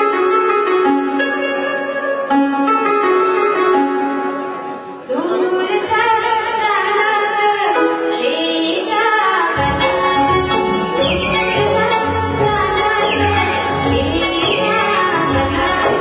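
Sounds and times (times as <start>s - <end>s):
instrumental accompaniment: 0.0s - 16.0s
girl singing: 5.1s - 16.0s.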